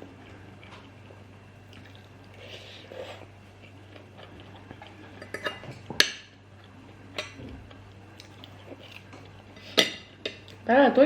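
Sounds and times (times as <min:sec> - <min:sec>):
cutlery clinking against dishes: 0:05.2 - 0:06.3.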